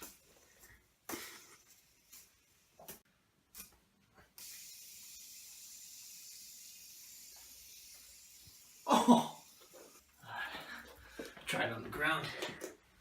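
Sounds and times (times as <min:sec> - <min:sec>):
fidget spinner whirring: 0:00.0 - 0:10.2
fidget spinner clicks: 0:02.9 - 0:09.7.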